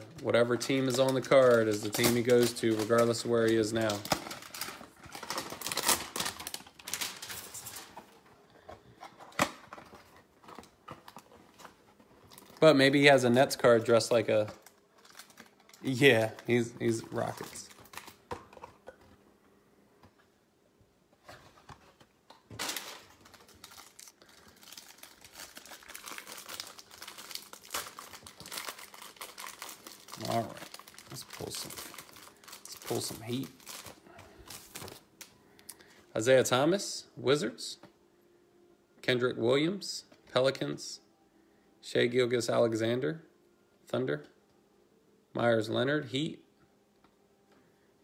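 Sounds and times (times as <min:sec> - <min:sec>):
wrapper crinkling: 0:00.0 - 0:19.0, 0:21.3 - 0:35.3
card pack wrapper tearing: 0:00.5 - 0:08.1, 0:12.3 - 0:18.4, 0:22.5 - 0:35.1.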